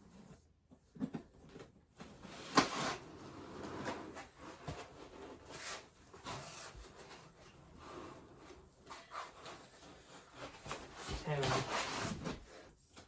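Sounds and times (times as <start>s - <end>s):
packaging rustling and scraping: 1.0s - 12.7s.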